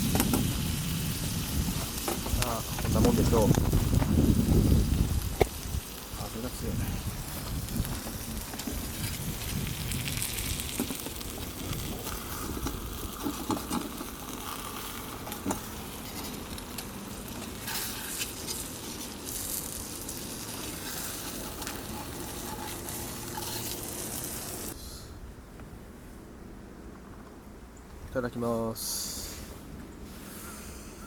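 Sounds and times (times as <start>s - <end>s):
wind rumble on microphone: 0.0s - 16.6s
bacon and eggs sizzling in a pan: 0.0s - 24.8s.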